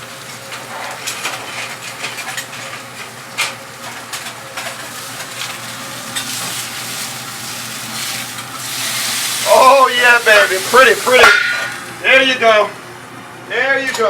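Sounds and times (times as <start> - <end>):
food sizzling in a pan: 3.8 - 12.4.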